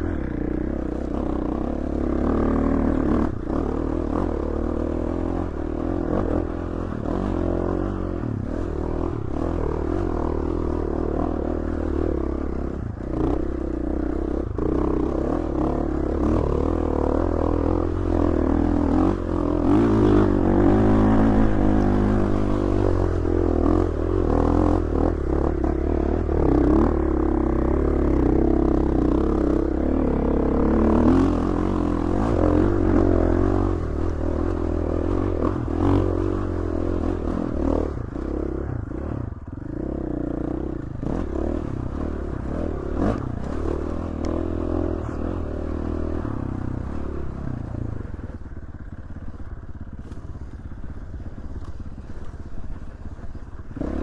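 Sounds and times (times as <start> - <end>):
dirt bike engine running: 0.0 - 54.0.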